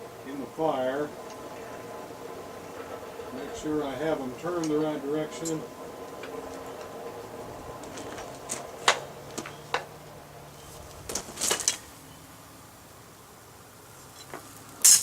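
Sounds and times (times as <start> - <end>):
steady low hum: 0.0 - 14.9
metal tools clinking: 4.6 - 6.6.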